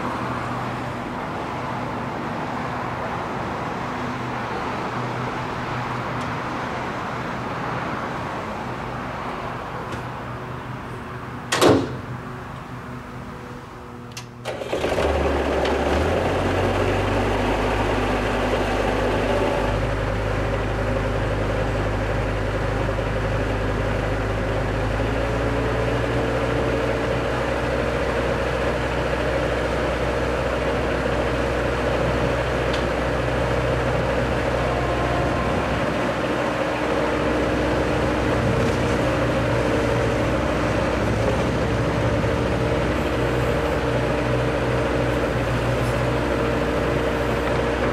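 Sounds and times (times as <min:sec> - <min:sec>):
loader engine revving: 0:14.0 - 0:47.9.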